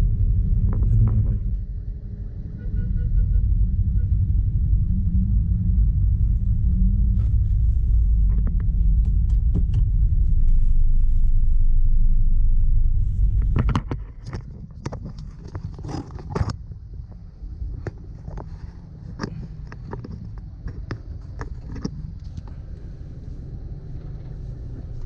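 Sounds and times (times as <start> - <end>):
road vehicle rumble: 0.0 - 25.0.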